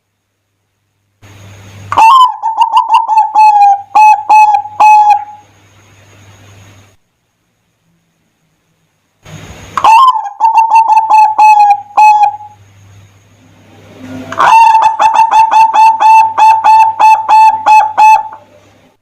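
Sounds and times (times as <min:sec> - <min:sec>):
dove rapid staccato cooing: 0:01.9 - 0:05.4, 0:09.8 - 0:12.6, 0:14.2 - 0:18.7.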